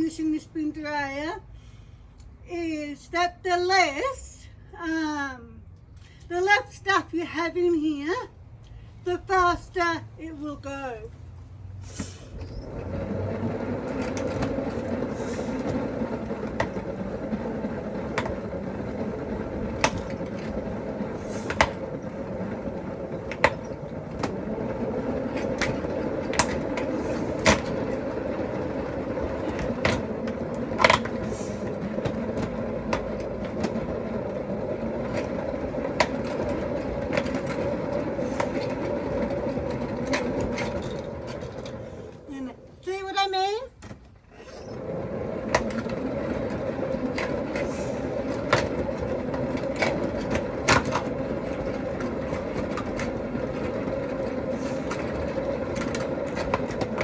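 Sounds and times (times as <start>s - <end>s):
spin dryer motor hum: 12.4s - 42.6s, 44.3s - 57.0s.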